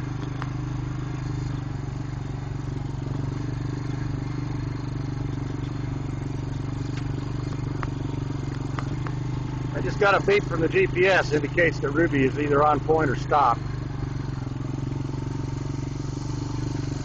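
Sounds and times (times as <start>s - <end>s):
atv engine running: 0.0s - 17.0s.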